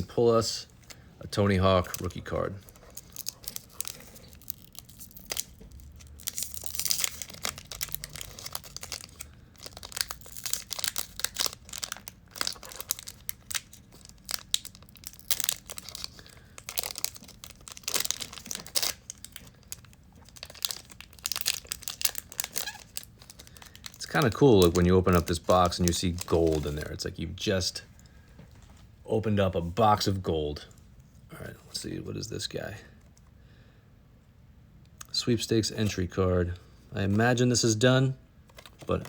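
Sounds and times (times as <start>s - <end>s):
wrapper tearing and crinkling: 1.9s - 26.9s.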